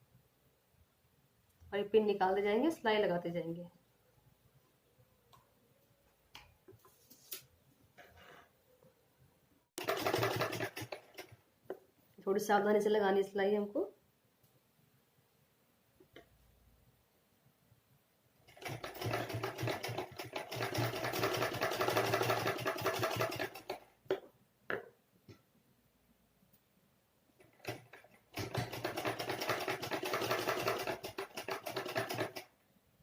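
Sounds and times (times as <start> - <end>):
sewing machine stitching: 9.8 - 11.4, 18.5 - 23.9, 27.4 - 32.5.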